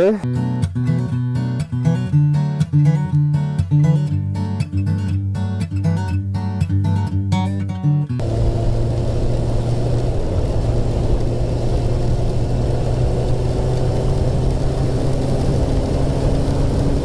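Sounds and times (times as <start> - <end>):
motorcycle engine running: 8.2 - 17.0
wind rumble on microphone: 8.2 - 17.0.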